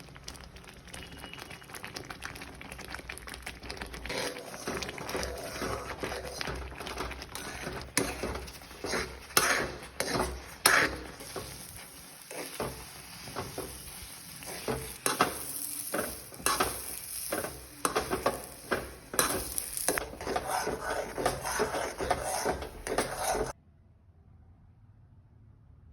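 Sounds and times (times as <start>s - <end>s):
light sizzle: 0.0s - 23.6s
metal spoon scraping a pan: 3.8s - 23.6s.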